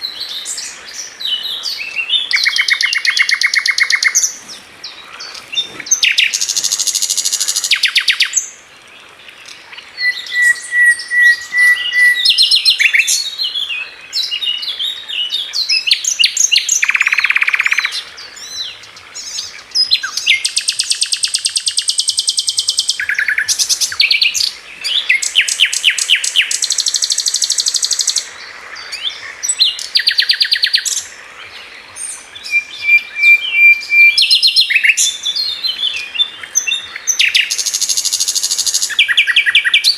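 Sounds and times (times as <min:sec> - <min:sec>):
songbirds chirping trills: 0:00.0 - 0:39.9
whistled bird note: 0:10.0 - 0:13.0.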